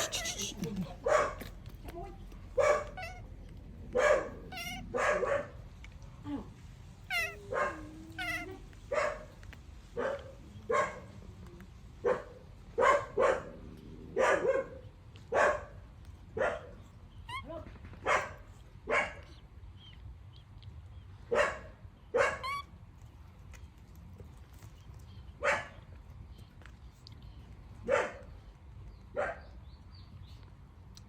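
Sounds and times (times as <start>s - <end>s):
dog barking: 0.0s - 1.6s, 2.6s - 3.2s, 3.9s - 5.6s, 7.1s - 11.2s, 12.0s - 16.8s, 18.0s - 19.3s, 21.3s - 22.6s, 25.4s - 25.8s, 27.8s - 28.3s, 29.1s - 29.6s.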